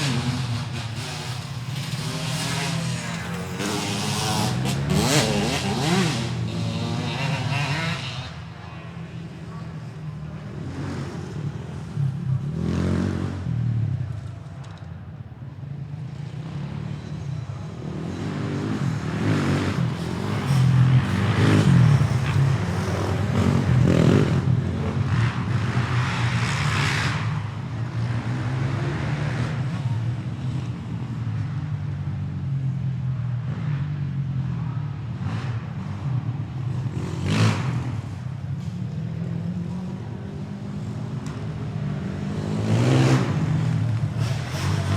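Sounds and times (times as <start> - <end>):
motorcycle engine revving: 0.0 - 8.4, 40.4 - 44.9.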